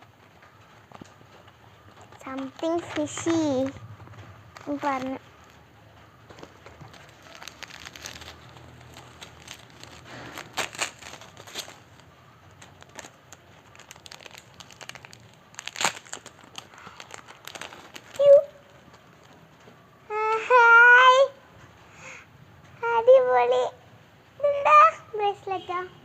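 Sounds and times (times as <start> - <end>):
plastic packaging crinkling and tearing: 0.2 - 19.4.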